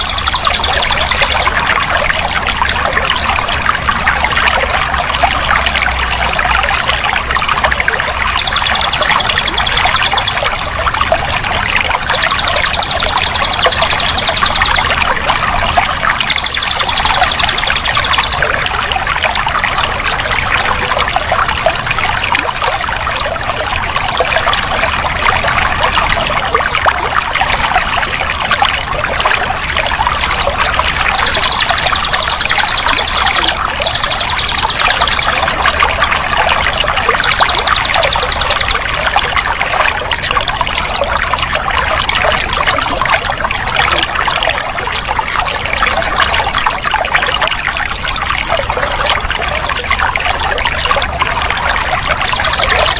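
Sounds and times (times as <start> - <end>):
high rapid trill: 0.0 - 1.7, 8.3 - 10.6, 12.0 - 15.0, 16.2 - 18.4, 31.1 - 35.8, 37.2 - 38.8, 52.2 - 52.9
water pouring and splashing: 0.0 - 52.9.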